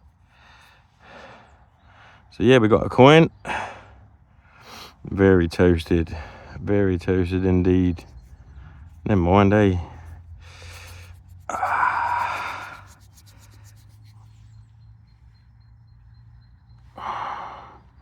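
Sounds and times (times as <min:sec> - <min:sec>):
man breathing out hard: 0:10.4 - 0:12.9, 0:16.9 - 0:17.9.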